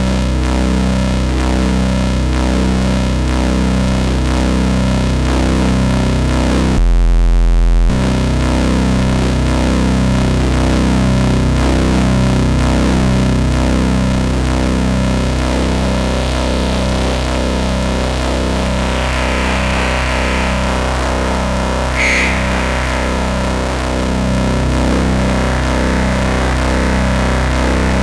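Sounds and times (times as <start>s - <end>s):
distorted synthesizer drone: 15.9s - 28.0s.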